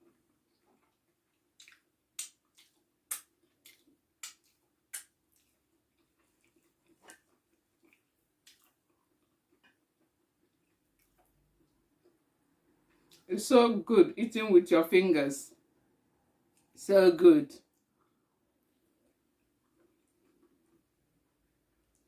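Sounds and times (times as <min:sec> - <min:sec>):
wet mouth smacks from chewing: 0:01.6 - 0:11.4.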